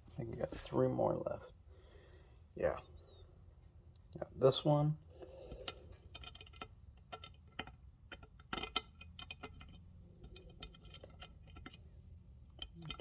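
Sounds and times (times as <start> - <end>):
small parts clicking and tapping: 5.5 - 13.0.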